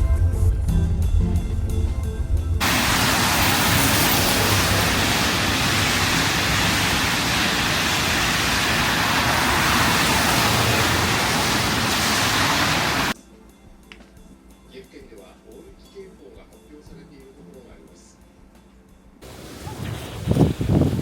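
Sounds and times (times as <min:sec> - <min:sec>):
loud rushing noise: 0:02.6 - 0:13.2.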